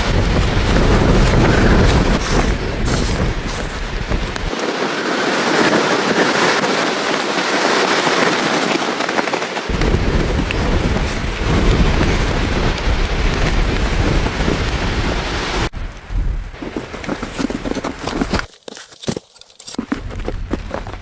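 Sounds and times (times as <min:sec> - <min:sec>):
wind rushing: 0:00.0 - 0:05.6, 0:09.7 - 0:17.0
wind rumble on microphone: 0:00.0 - 0:06.9, 0:09.7 - 0:18.4
tent fabric flapping: 0:00.0 - 0:19.1.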